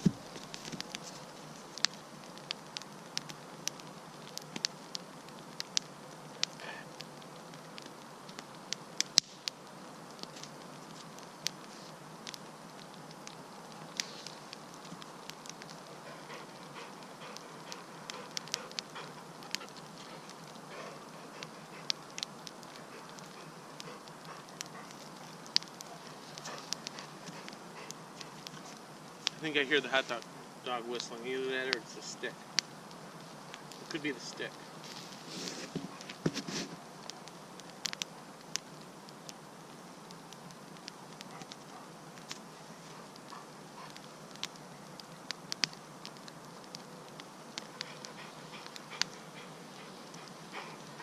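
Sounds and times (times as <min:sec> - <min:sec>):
campfire crackling and popping: 0:00.0 - 0:51.0
hiss of burning: 0:00.0 - 0:51.0.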